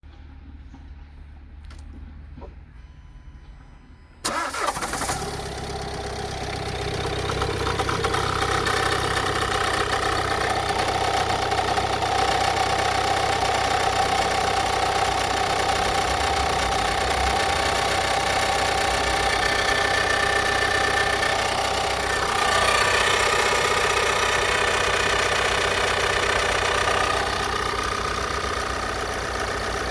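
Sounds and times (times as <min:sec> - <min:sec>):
diesel engine starting and idling: 0:00.1 - 0:29.9.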